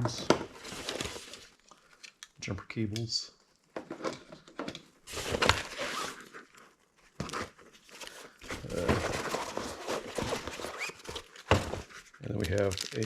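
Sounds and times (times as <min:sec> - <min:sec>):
packaging rustling: 0:00.1 - 0:02.2, 0:05.1 - 0:13.0.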